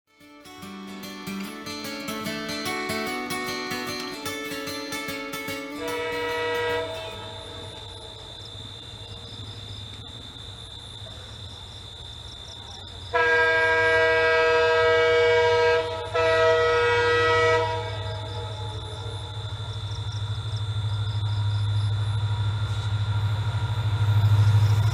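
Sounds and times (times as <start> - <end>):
locomotive air horn blasts: 5.8 - 7.7, 13.2 - 18.3.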